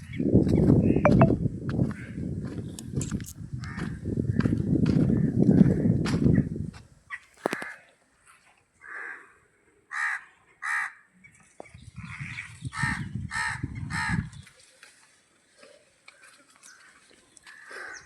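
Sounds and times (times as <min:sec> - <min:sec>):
crow cawing: 0:08.8 - 0:11.0, 0:17.5 - 0:18.0.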